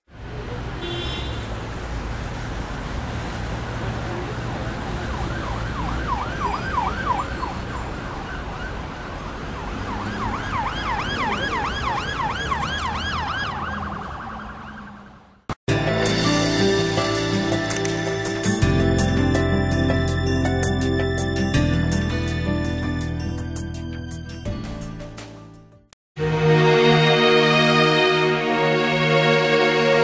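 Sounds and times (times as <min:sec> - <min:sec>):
road traffic rumble: 0:00.1 - 0:24.3
emergency siren yelping: 0:04.8 - 0:15.2.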